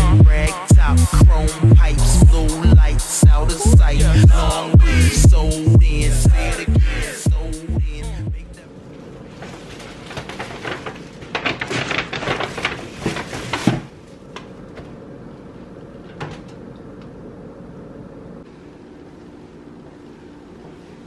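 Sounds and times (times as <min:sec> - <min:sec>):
low steady hum: 0:00.0 - 0:11.4.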